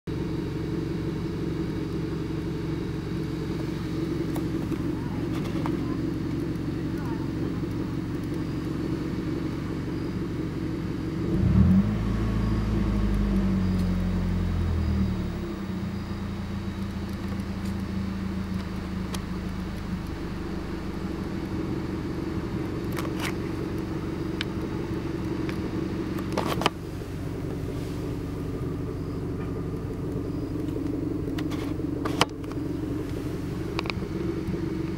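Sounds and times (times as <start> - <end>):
car engine idling roughly: 0.1 - 11.7, 12.3 - 34.9
sharp clicks: 29.7 - 31.5.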